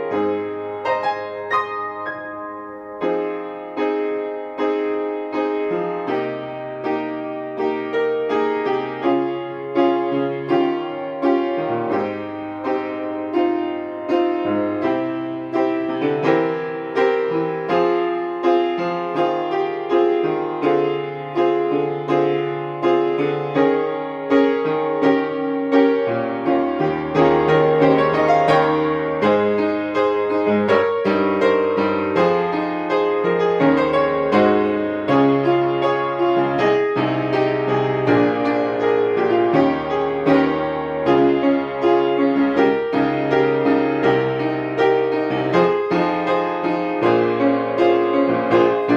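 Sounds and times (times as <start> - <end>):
solo piano accompaniment: 0.0 - 48.9.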